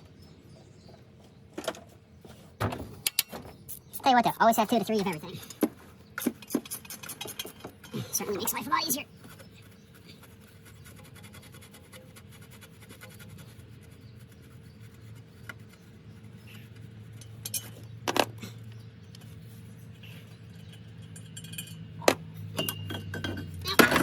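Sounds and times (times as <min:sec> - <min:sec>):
sharp metal clicks: 0:03.0 - 0:04.0
wrench scraping: 0:05.1 - 0:10.1, 0:16.4 - 0:17.9.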